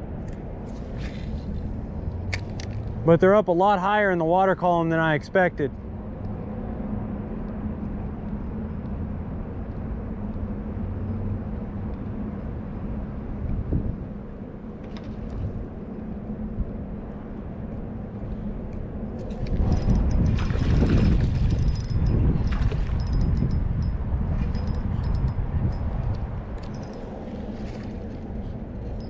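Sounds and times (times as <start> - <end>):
faint constant hum: 0.0 - 29.0
road traffic rumble: 0.0 - 29.0.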